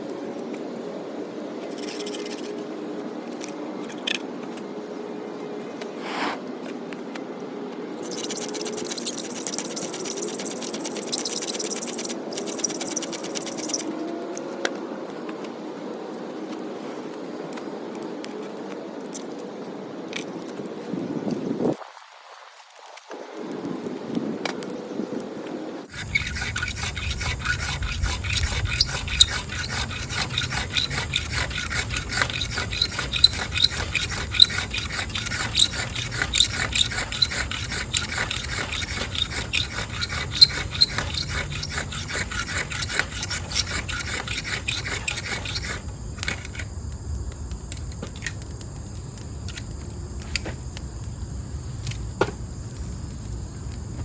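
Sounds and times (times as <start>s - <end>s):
knife scraping a stick: 1.6s - 4.6s, 5.8s - 7.2s, 7.9s - 14.5s, 25.8s - 46.7s
crickets trilling: 7.8s - 54.0s.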